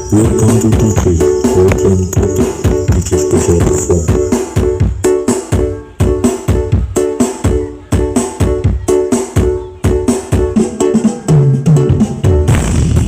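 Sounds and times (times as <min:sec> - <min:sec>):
high jingling shimmer: 0:00.0 - 0:04.5
loud music with quick drum beat: 0:00.0 - 0:13.0.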